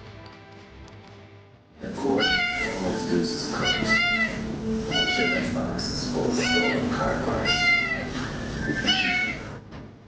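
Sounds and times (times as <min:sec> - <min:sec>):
cat meowing: 0:02.1 - 0:02.8, 0:03.5 - 0:05.6, 0:06.3 - 0:09.6.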